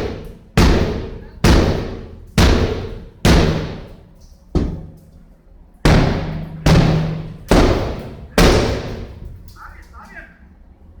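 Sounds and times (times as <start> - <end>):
hammer blows echoing: 0.0 - 4.0, 5.8 - 9.4.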